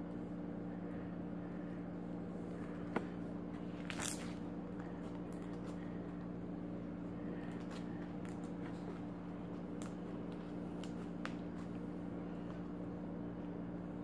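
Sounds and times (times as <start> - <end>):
steady low hum: 0.0 - 14.0
slime popping and crackling: 3.8 - 4.4.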